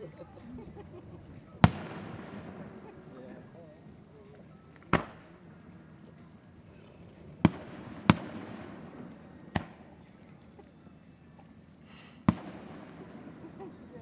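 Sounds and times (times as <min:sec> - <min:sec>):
fireworks bursting: 0:00.0 - 0:10.6, 0:11.4 - 0:14.0
high hiss: 0:11.8 - 0:12.4.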